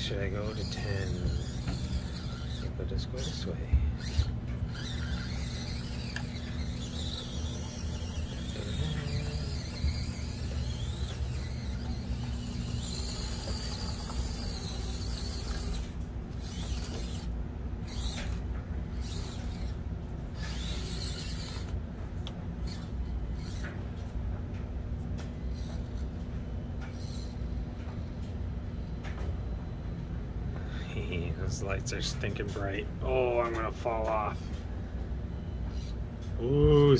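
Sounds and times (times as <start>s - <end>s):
toy car electric motor whirring: 0.0s - 24.1s, 25.2s - 26.1s, 26.8s - 27.6s, 35.4s - 36.0s
clicks and creaks: 0.3s - 28.4s.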